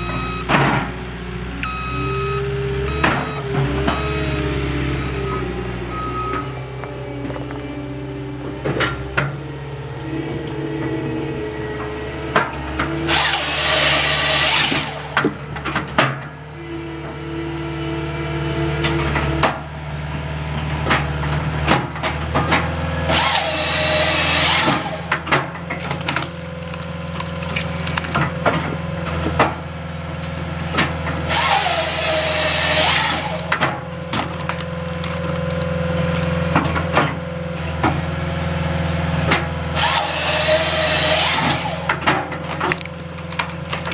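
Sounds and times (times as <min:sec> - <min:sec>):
engine running steadily: 0:00.0 - 0:43.9
saw cutting log: 0:12.8 - 0:15.4, 0:23.0 - 0:27.8, 0:31.2 - 0:34.5, 0:39.7 - 0:43.9
wood cracks and knocks: 0:24.6 - 0:29.6, 0:32.8 - 0:37.2, 0:41.4 - 0:43.9.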